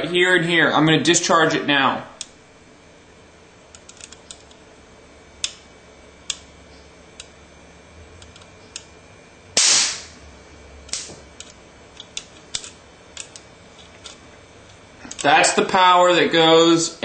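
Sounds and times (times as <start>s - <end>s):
metal clicking on circuit board: 5.4s - 5.6s, 10.9s - 15.3s
electric spark snap: 9.6s - 10.2s, 10.9s - 11.3s.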